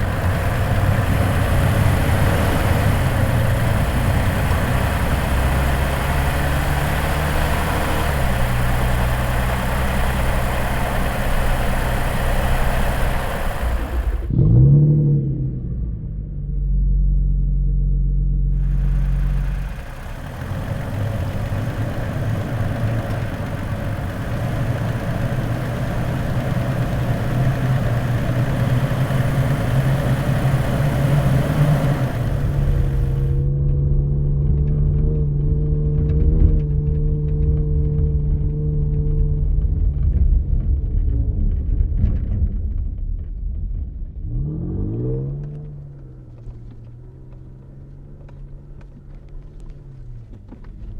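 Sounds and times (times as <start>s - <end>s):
engine running: 0.0s - 14.8s, 16.5s - 42.4s
engine revving: 0.0s - 15.5s, 18.5s - 33.5s
road and wind noise: 0.0s - 16.2s, 18.5s - 50.9s.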